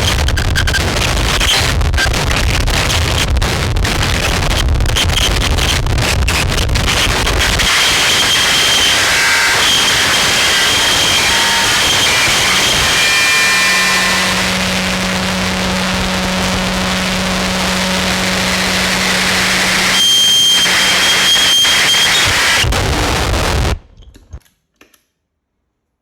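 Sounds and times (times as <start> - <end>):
distorted fuzz noise: 0.0 - 23.9
high whine: 0.0 - 23.9
low drone: 7.7 - 21.8.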